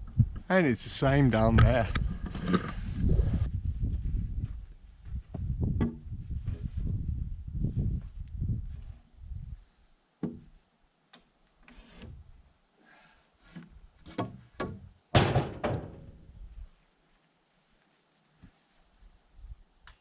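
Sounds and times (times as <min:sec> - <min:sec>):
wooden knocks on log: 0:10.2 - 0:10.5.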